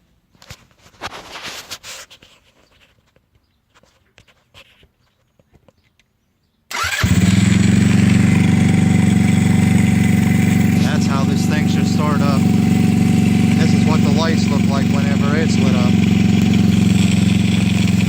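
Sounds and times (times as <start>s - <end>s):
scooter engine idling: 6.7s - 18.0s
scooter engine starter cranking: 6.7s - 18.0s.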